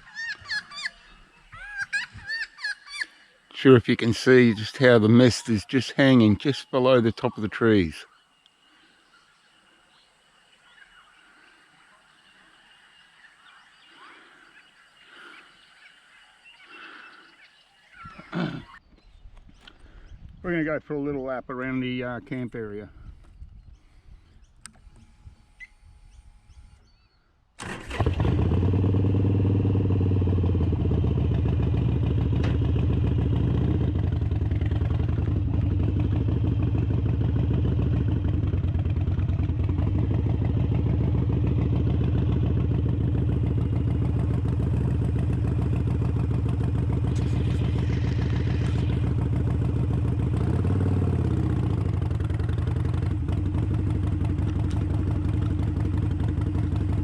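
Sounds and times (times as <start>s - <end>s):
motorcycle engine starting and revving: 27.6s - 57.0s.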